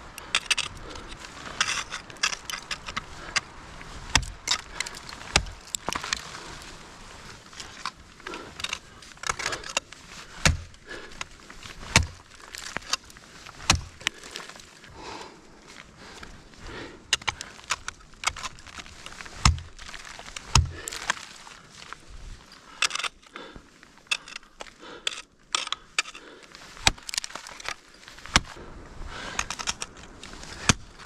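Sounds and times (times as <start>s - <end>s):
ice axes striking ice: 0.2s - 6.7s, 7.3s - 14.8s, 17.1s - 21.4s, 24.1s - 28.6s, 29.4s - 31.0s
metal climbing gear jangling: 0.2s - 14.9s, 17.0s - 28.6s, 29.2s - 31.0s.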